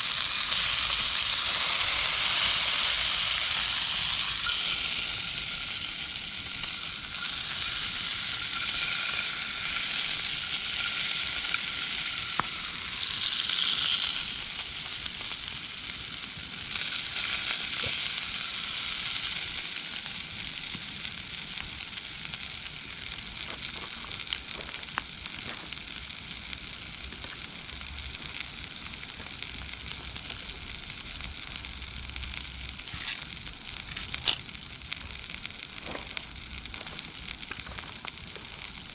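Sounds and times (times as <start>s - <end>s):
meat sizzling on a campfire: 0.0s - 38.9s
sharp crackles: 21.6s - 38.9s.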